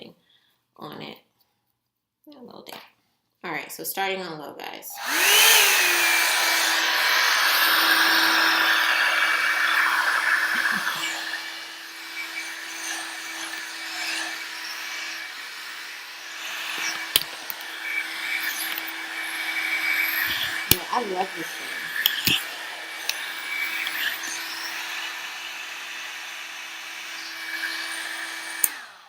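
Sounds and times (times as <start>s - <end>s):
hair dryer motor and rushing air: 4.9s - 29.0s
sharp clicks: 16.6s - 24.2s.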